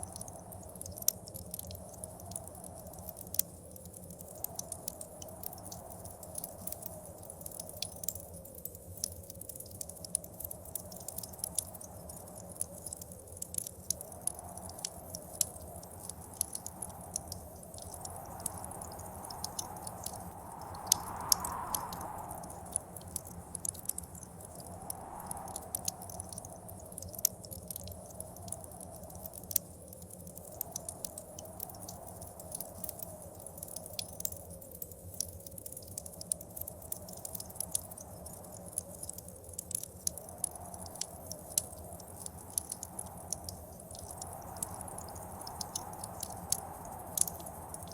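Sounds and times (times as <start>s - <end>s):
wood fire crackling and popping: 0.0s - 47.9s
gusting blizzard wind: 16.0s - 27.0s, 44.1s - 47.9s.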